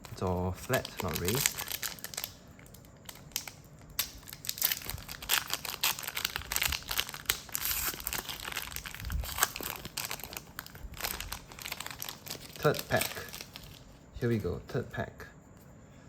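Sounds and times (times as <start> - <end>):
wrapper crinkling: 0.0 - 14.0.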